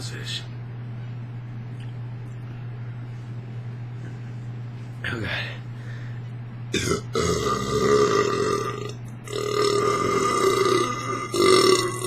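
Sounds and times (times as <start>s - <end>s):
man belching: 6.7s - 12.0s.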